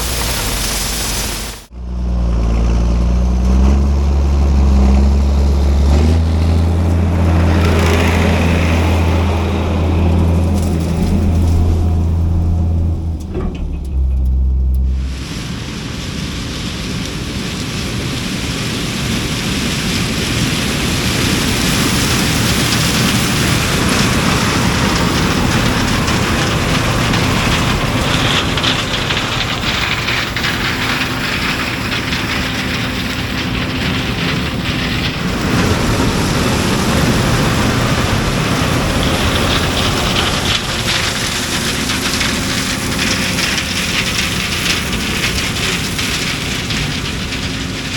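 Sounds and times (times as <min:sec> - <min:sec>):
harvester engine hum: 0:00.0 - 0:47.9
loud rushing noise: 0:05.6 - 0:18.6, 0:34.7 - 0:45.6.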